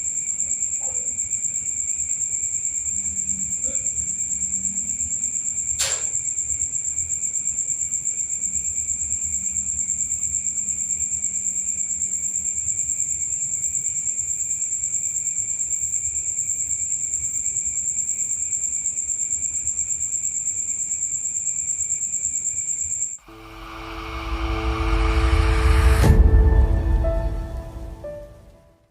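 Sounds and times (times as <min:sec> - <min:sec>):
cricket chirring: 0:00.0 - 0:28.3.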